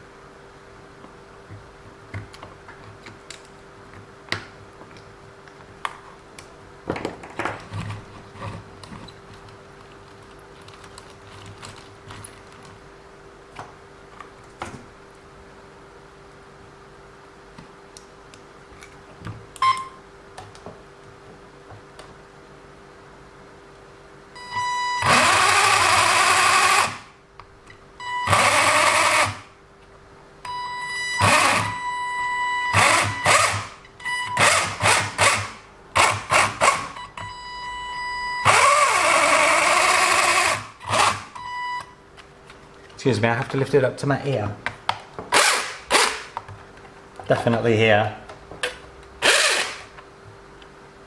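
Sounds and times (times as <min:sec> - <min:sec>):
toy car motor whining and grinding: 0:25.0 - 0:27.0, 0:28.2 - 0:29.4, 0:31.2 - 0:31.8, 0:32.7 - 0:33.7, 0:38.4 - 0:41.2, 0:49.2 - 0:49.8.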